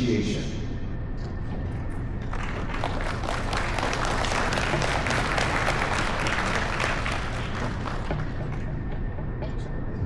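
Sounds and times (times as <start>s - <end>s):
audience applauding: 2.2s - 8.9s.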